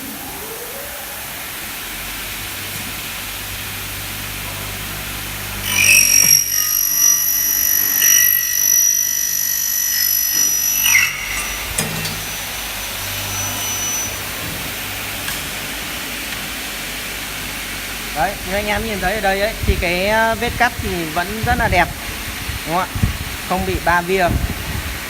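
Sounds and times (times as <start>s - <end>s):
saw blade running without load: 5.4s - 15.2s
saw screeching through aluminium: 5.6s - 14.8s.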